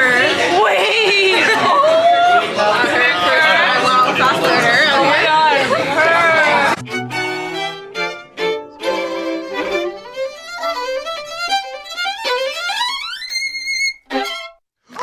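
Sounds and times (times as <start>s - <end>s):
solo violin: 6.7s - 14.6s.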